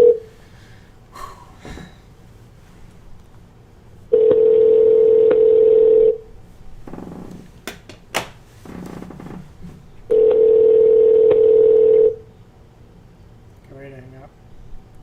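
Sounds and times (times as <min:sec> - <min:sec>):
telephone ringback tone: 0:00.0 - 0:00.3, 0:04.1 - 0:06.3, 0:10.1 - 0:12.2.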